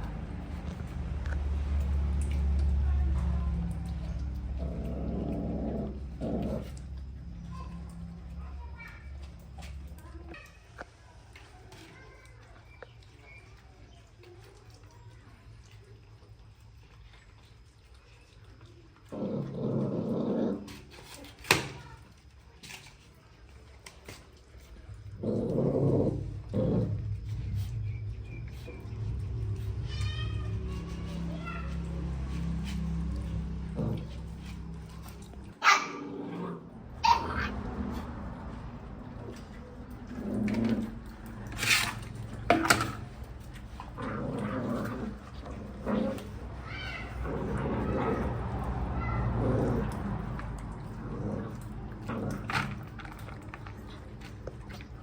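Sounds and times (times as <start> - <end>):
puppy growling: 0.0 - 10.9, 15.6 - 55.0
puppy squealing: 37.0 - 37.6, 46.6 - 48.0
puppy whining: 37.0 - 37.7, 43.7 - 48.3.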